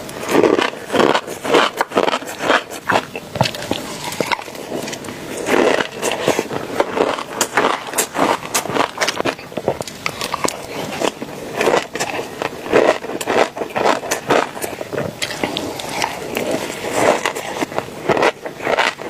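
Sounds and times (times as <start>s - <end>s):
crunchy chewing: 0.0s - 19.0s.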